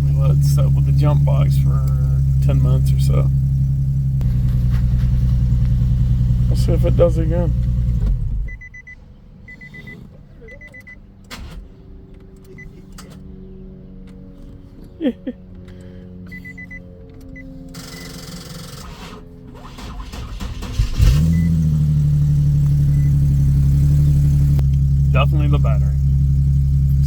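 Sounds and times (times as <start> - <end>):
car engine cranking: 0.0 - 27.0
car engine idling: 0.0 - 27.0
car warning chime beeping: 8.4 - 11.0, 16.3 - 18.4, 20.2 - 23.6.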